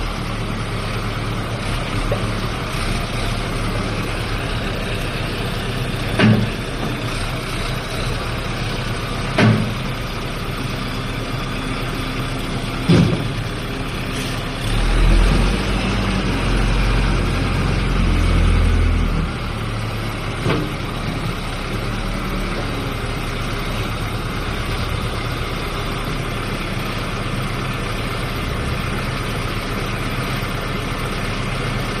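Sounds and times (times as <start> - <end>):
diesel engine running: 0.0 - 32.0
sharp knocks: 6.2 - 7.0, 9.4 - 9.8, 12.8 - 13.4.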